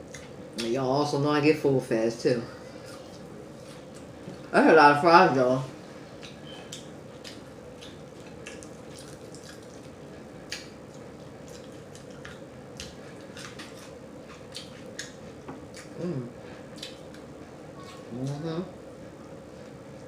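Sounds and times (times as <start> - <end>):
person chewing with smacking: 0.0 - 0.7, 6.2 - 18.5
steady background hum: 0.0 - 20.0.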